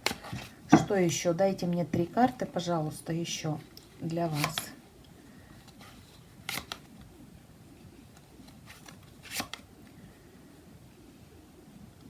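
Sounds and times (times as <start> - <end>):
cards rustling: 0.0 - 0.7, 3.6 - 7.2, 8.1 - 9.9
cards riffling: 4.3 - 4.8, 5.6 - 7.1, 8.1 - 9.7.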